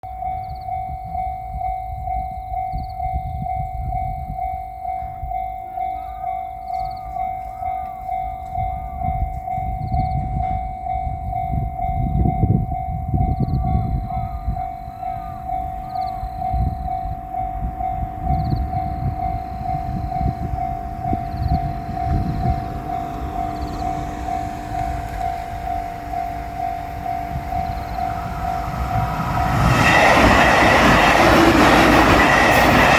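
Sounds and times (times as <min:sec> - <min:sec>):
railroad crossing bell ringing: 0:00.0 - 0:32.9
electric train passing: 0:00.1 - 0:32.9
train wheels clattering: 0:16.9 - 0:32.9.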